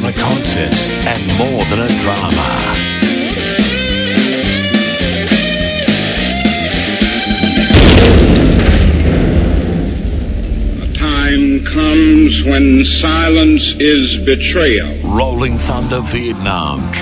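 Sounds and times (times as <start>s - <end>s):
rock music with guitar and drums: 0.0s - 9.5s
deep explosion boom: 7.7s - 12.6s.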